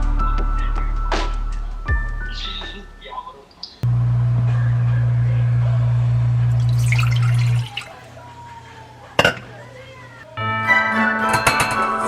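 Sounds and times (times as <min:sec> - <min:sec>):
plucked-string melody: 0:10.4 - 0:12.0.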